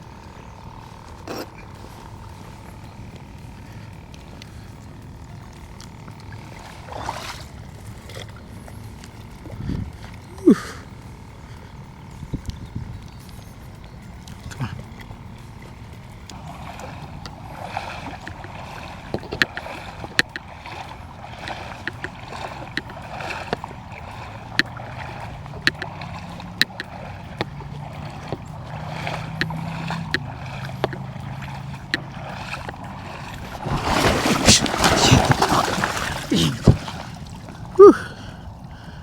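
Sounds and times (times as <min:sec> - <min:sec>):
water sloshing from wading: 0:00.0 - 0:39.0
sharp clicks: 0:26.6 - 0:27.5
loud water splash: 0:33.5 - 0:37.4.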